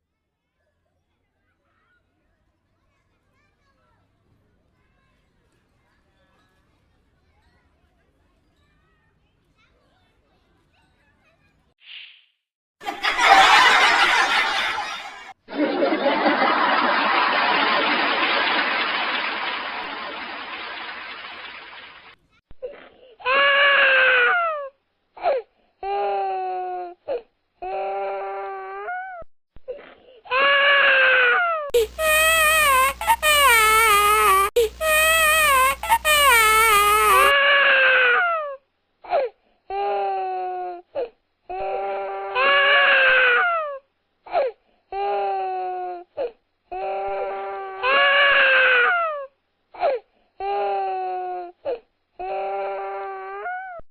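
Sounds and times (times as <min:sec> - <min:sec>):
baby crying: 0:30.3 - 0:38.5, 0:41.5 - 0:53.8.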